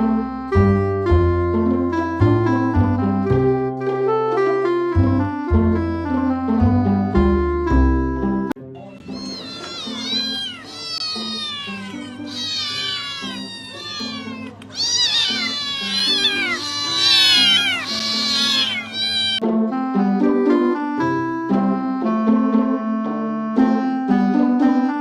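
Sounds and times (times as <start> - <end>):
light background music: 0.0 - 25.0
cat meowing: 8.8 - 19.4.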